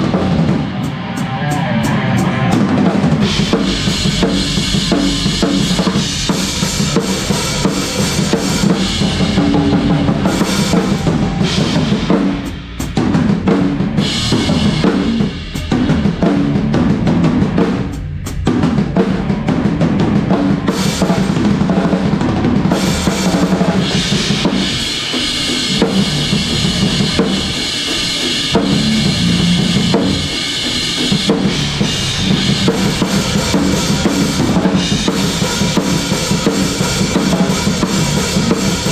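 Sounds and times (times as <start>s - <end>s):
rock drum kit playing: 0.0s - 38.9s
sustained instrument tones: 0.3s - 17.6s, 28.4s - 35.1s.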